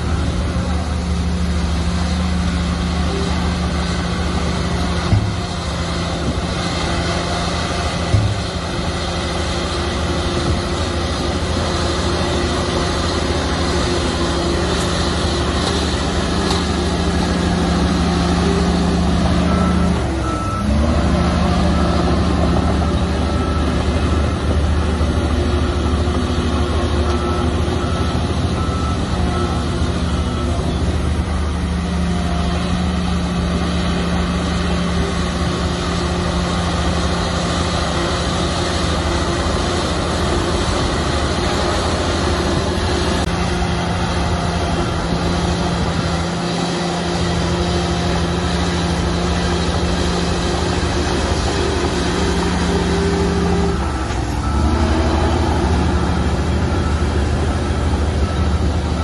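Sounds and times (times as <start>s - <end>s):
bulldozer diesel engine running: 0.0s - 59.0s
reverse alarm beeping: 50.8s - 59.0s.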